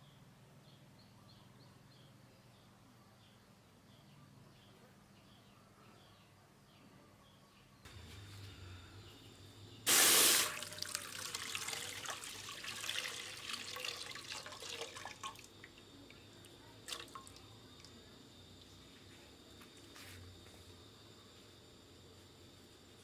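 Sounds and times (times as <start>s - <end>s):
water pouring: 9.9s - 15.9s, 16.8s - 17.9s
water trickling and dripping: 10.0s - 18.0s.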